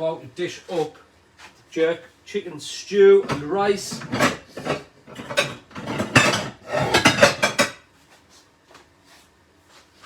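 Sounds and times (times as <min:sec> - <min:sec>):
kitchen utensils and dishes clattering: 0:03.2 - 0:07.8.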